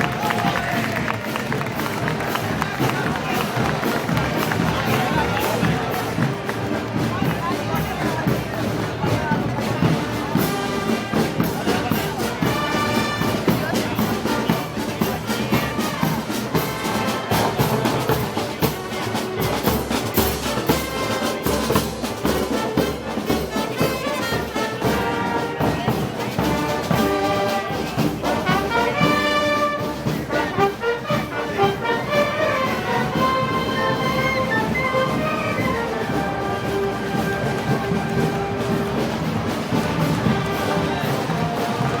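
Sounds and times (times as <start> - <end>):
brass band playing a march: 0.0 - 42.0
steady drumbeat: 0.0 - 42.0.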